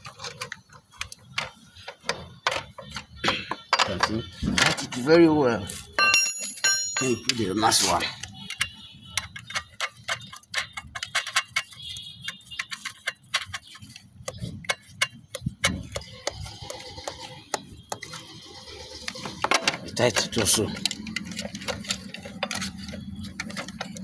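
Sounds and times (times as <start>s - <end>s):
wrench clicking and tapping: 6.0s - 24.0s.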